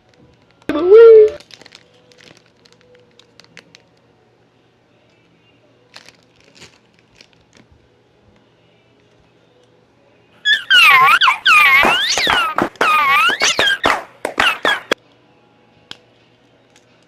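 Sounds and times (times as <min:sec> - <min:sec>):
plastic packaging crinkling: 0:01.3 - 0:04.0, 0:05.8 - 0:07.7.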